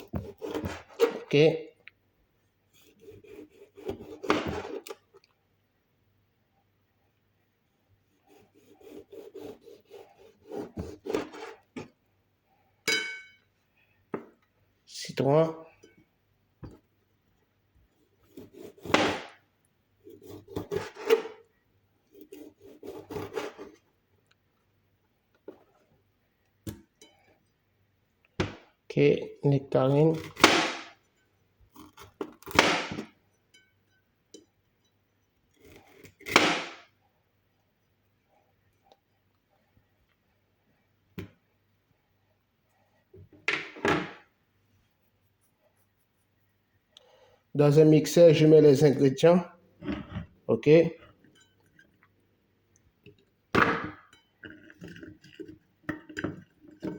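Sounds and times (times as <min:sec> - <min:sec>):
knife sawing through lemon: 0:02.8 - 0:04.3, 0:08.3 - 0:11.6.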